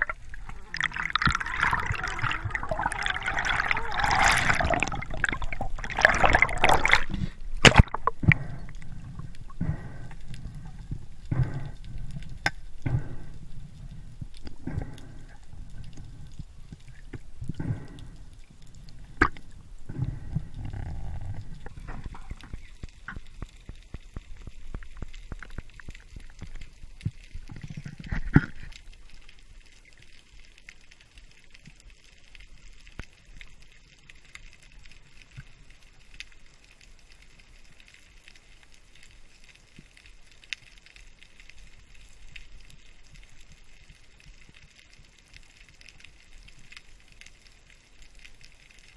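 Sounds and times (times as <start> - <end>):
underwater water rushing: 0.0 - 23.4
faint crackle of small clicks: 0.0 - 48.9.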